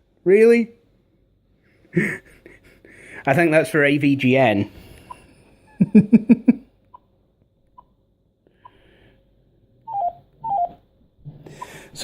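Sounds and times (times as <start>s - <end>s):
person chuckling: 1.8s - 3.1s, 5.1s - 6.7s.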